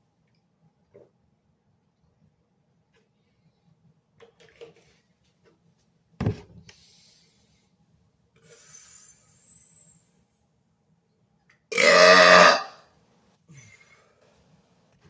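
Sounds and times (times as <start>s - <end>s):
loud thump: 6.2s - 6.6s
faint hiss: 8.4s - 10.6s.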